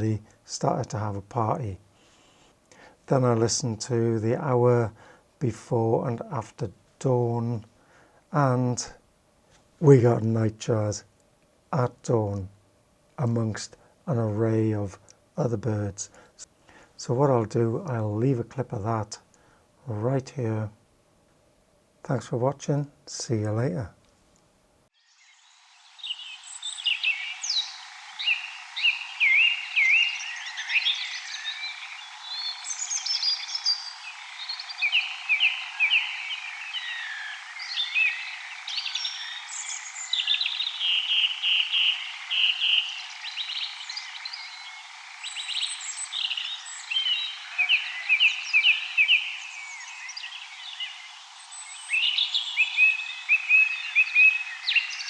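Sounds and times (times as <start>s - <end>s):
birds singing: 0.0s - 7.7s, 26.0s - 55.0s.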